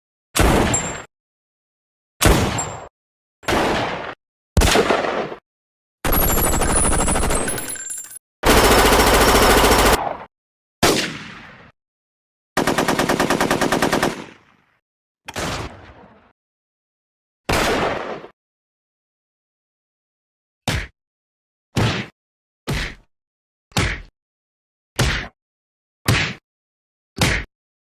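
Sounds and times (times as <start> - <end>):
rapid machine-gun fire: 6.0 - 7.5, 8.4 - 10.1, 12.6 - 14.2.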